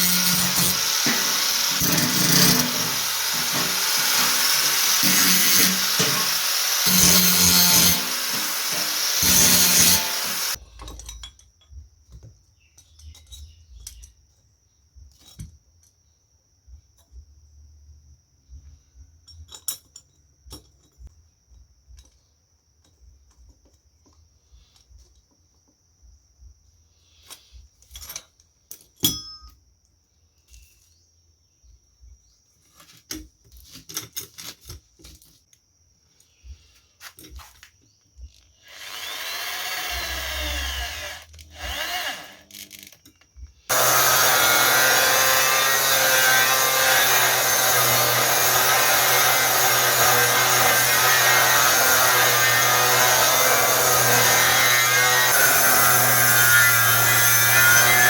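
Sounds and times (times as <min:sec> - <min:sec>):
angle grinder motor: 0:00.0 - 0:10.6, 0:38.6 - 0:42.9, 0:43.7 - 0:58.0
metal parts clinking: 0:00.1 - 0:11.8, 0:12.8 - 0:14.3.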